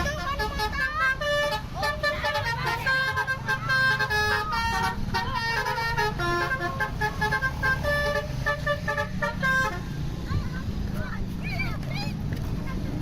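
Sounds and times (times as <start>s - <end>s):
multi-tone bus horn tune: 0.0s - 10.2s
bus engine running: 0.0s - 13.0s.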